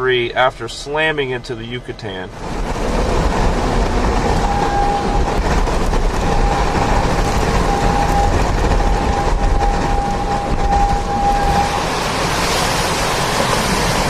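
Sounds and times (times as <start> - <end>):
strong wind rushing: 2.3 - 14.0
thin wind whistle: 4.1 - 12.1.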